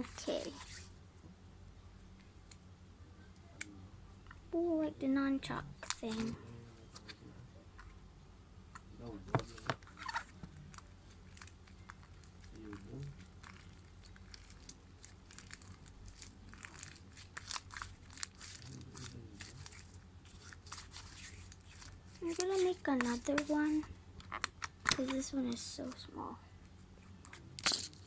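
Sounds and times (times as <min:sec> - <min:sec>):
sticky clicks and crackles: 0:10.2 - 0:23.6, 0:24.2 - 0:26.0.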